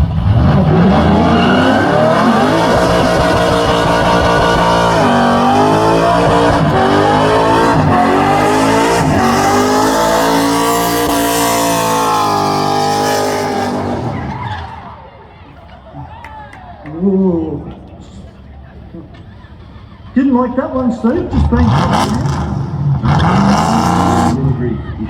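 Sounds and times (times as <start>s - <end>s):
car engine at high revs: 0.0s - 14.8s, 21.1s - 25.0s.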